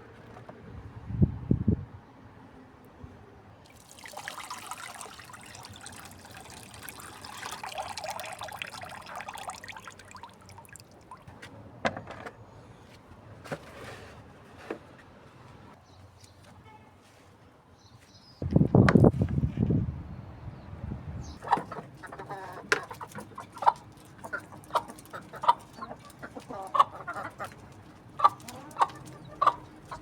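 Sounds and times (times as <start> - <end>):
water pouring and trickling: 3.6 - 11.4, 21.4 - 30.0.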